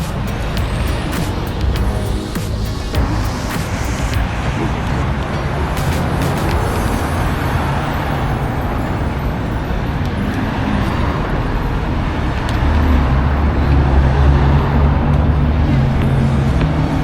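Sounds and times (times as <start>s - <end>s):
street traffic: 0.0s - 17.0s.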